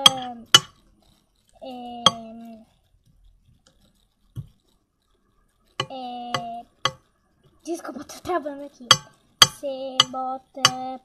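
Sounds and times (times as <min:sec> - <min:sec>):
girl's hesitant vowel: 0:01.6 - 0:02.7, 0:05.8 - 0:06.8, 0:09.6 - 0:11.0.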